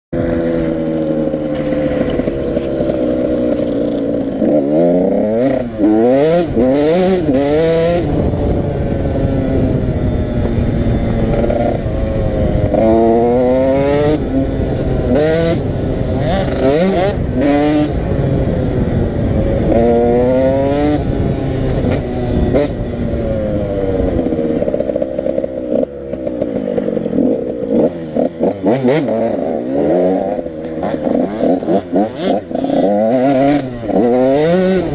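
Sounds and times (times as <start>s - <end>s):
motorcycle engines revving: 0.2s - 34.9s.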